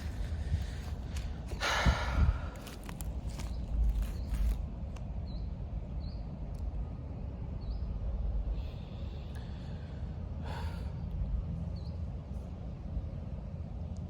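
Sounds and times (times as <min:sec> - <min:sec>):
low microphone rumble: 0:00.0 - 0:04.7.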